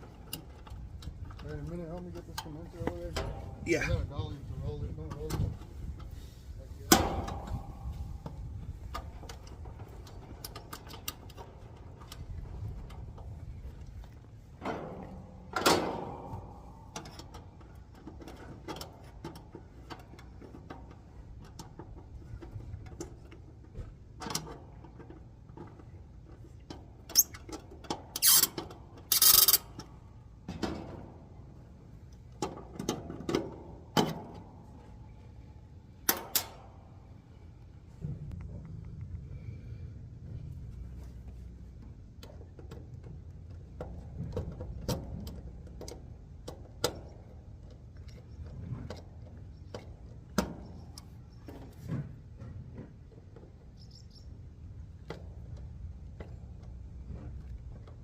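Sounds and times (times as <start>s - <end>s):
metal clatters and scrapes: 0.0s - 35.4s
tools knocking and clanking: 6.9s - 13.3s
faint low rumble: 36.7s - 46.5s.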